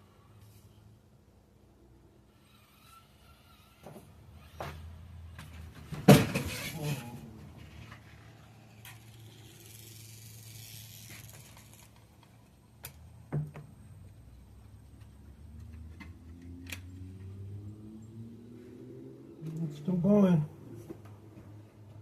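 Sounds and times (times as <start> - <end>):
small electric motor humming: 2.3 - 5.0, 6.5 - 12.6.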